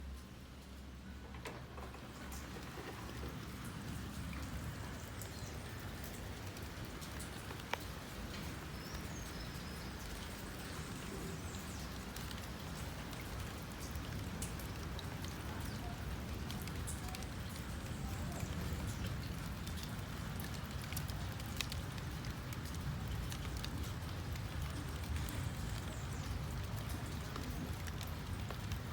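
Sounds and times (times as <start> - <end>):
steady rain falling: 0.0 - 28.9
drops ticking: 0.1 - 10.8.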